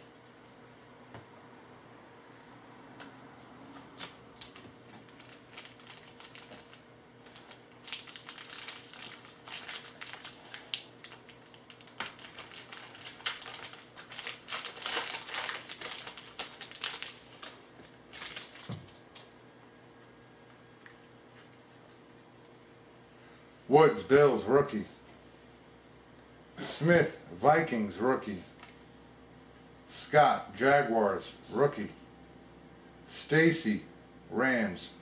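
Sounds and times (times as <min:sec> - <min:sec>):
wrapper crinkling and tearing: 0:03.9 - 0:19.3.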